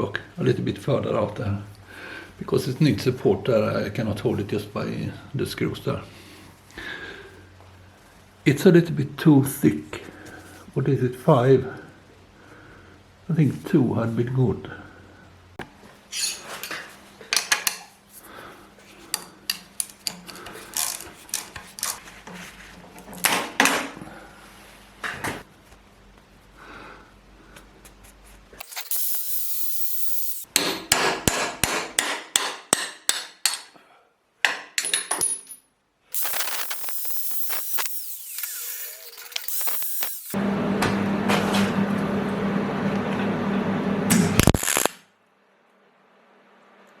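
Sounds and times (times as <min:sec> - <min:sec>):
steady hissing noise: 0:00.2 - 0:23.1, 0:23.8 - 0:30.6, 0:36.0 - 0:40.4.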